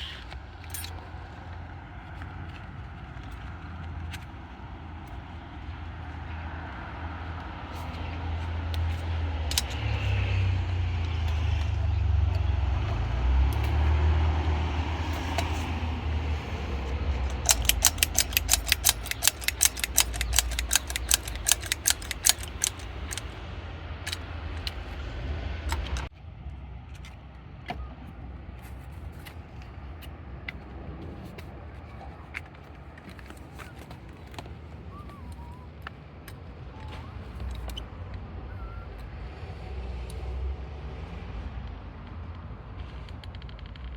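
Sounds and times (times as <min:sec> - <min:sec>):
vehicle engine rumbling: 0:00.0 - 0:43.9
rapid sharp clicks: 0:16.6 - 0:23.4.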